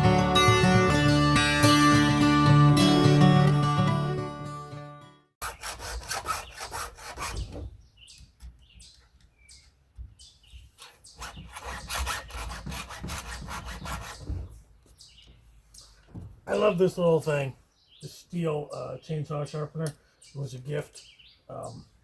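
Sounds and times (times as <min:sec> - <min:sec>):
guitar music: 0:00.0 - 0:05.3
file rasping on chainsaw chain: 0:05.4 - 0:07.4, 0:10.8 - 0:14.2.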